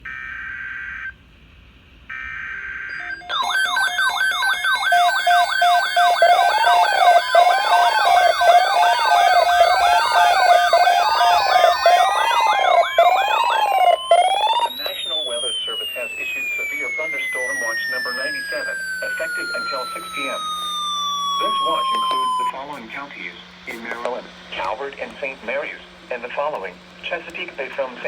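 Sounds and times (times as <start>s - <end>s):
overlapping electronic siren tones: 2.1s - 22.6s
warbling data tone bursts: 2.9s - 22.6s
steady tone: 3.2s - 22.6s.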